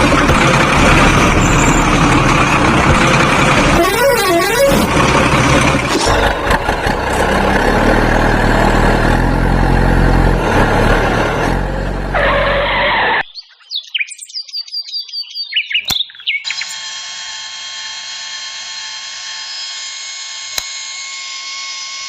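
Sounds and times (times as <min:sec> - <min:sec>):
engine hum: 0:00.0 - 0:13.3
car horns honking: 0:03.6 - 0:05.1.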